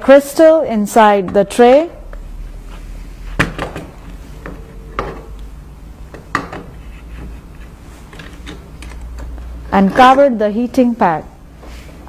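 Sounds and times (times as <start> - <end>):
light rubbing and scraping: 6.6 - 8.4.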